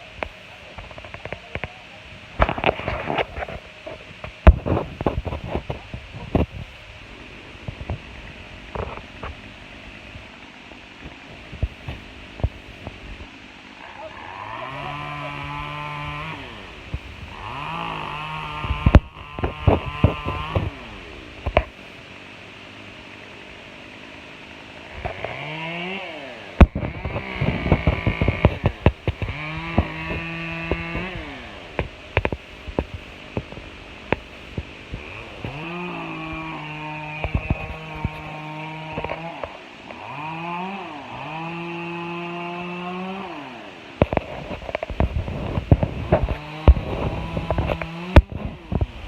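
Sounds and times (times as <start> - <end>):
chainsaw revving: 0.0 - 22.1, 22.7 - 49.0.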